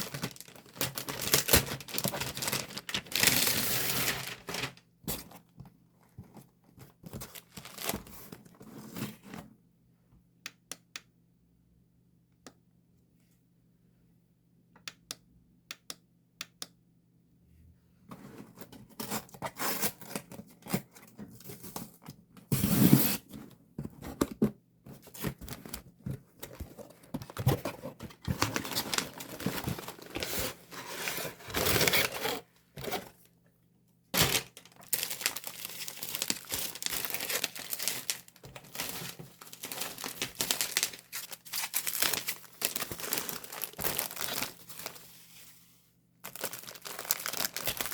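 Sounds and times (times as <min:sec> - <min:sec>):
plastic packaging crinkling and tearing: 0:00.0 - 0:05.4, 0:07.1 - 0:09.2, 0:26.4 - 0:33.1, 0:34.2 - 0:45.1, 0:46.2 - 0:47.9.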